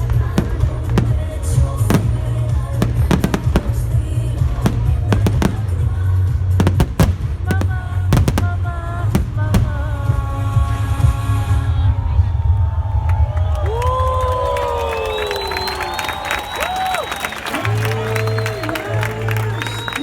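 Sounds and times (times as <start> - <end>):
loud music with heavy bass: 0.0 - 12.2
fireworks bursting: 0.0 - 20.0.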